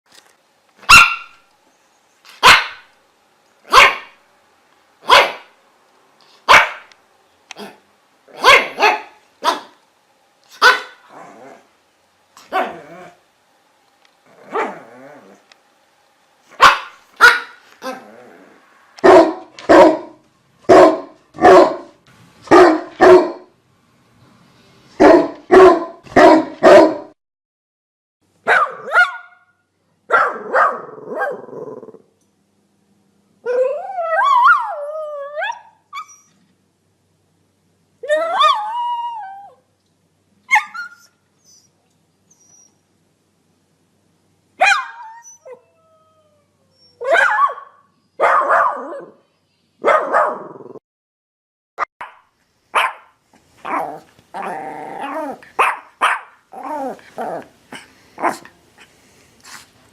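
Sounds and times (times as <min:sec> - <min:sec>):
dog barking: 0:00.9 - 0:01.4, 0:02.4 - 0:02.9, 0:03.7 - 0:04.2, 0:05.0 - 0:05.6, 0:06.4 - 0:06.9, 0:07.6 - 0:09.8, 0:10.6 - 0:11.0, 0:12.5 - 0:12.8, 0:16.6 - 0:18.0, 0:19.0 - 0:23.5, 0:25.0 - 0:27.2, 0:28.4 - 0:31.5, 0:44.6 - 0:45.1, 0:47.0 - 0:49.2, 0:49.8 - 0:50.5, 0:52.0 - 0:54.0, 0:55.6 - 0:56.4, 0:58.2 - 0:58.5.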